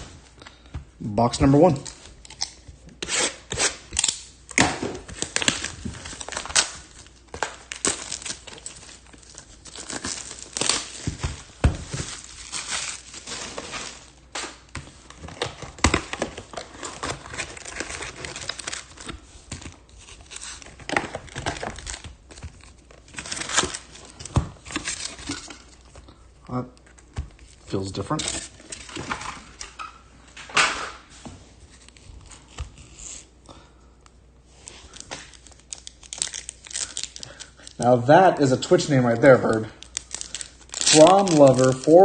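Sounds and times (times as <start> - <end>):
plastic wrapping tearing and crinkling: 1.7 - 26.2, 34.6 - 42.0.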